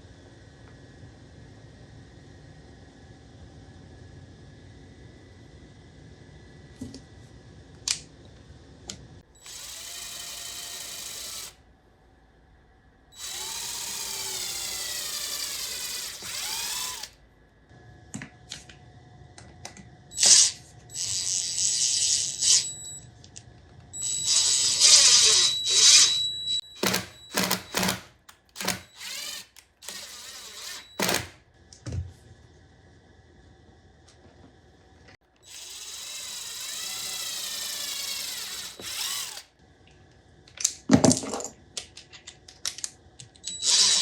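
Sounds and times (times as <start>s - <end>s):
power drill running: 9.4s - 11.6s, 13.2s - 17.2s, 24.0s - 31.4s, 35.4s - 39.5s.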